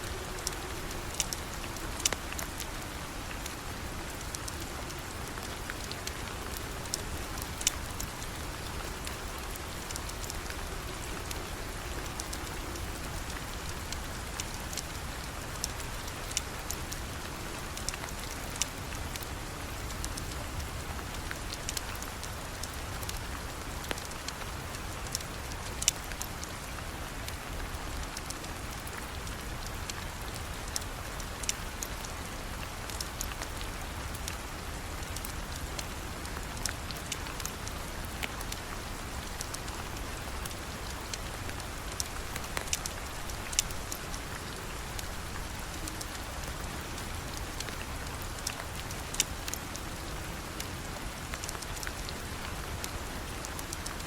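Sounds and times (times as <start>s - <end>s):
rain falling: 0.0s - 54.0s.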